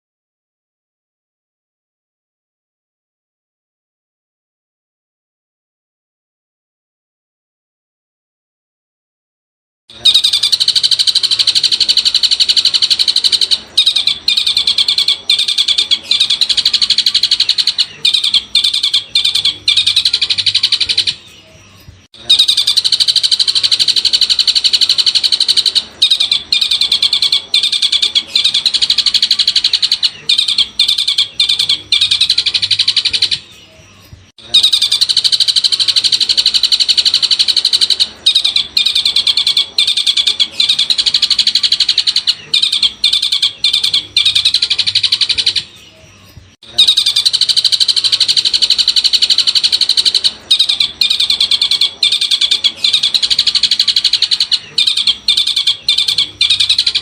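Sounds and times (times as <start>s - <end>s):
bird chattering song: 9.9s - 57.0s.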